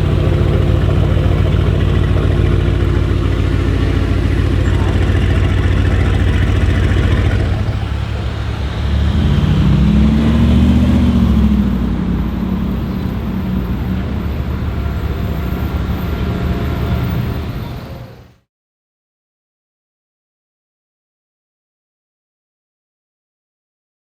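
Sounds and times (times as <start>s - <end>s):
car engine rumbling: 0.0s - 18.4s.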